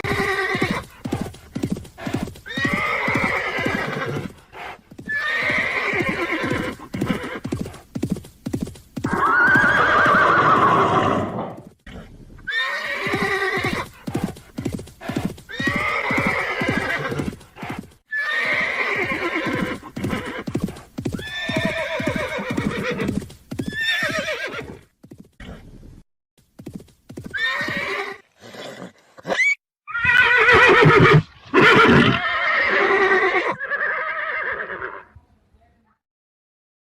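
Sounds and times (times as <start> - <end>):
horses neighing: 0.0 - 7.6, 9.0 - 24.8, 27.3 - 35.1
clip-clopping hoofbeats: 0.0 - 11.0, 13.0 - 25.6, 26.4 - 28.0.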